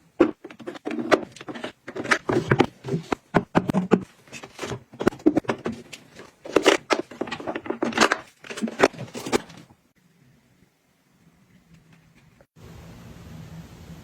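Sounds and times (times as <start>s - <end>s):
items handled and set down: 0.1s - 9.8s.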